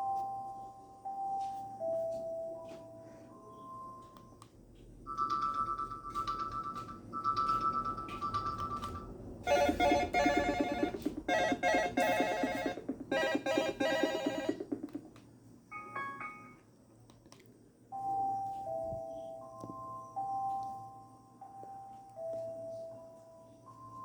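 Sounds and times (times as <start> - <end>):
chiming ringtone: 0.0 - 4.4, 5.1 - 14.6, 15.7 - 16.6
high beeps: 9.5 - 14.9.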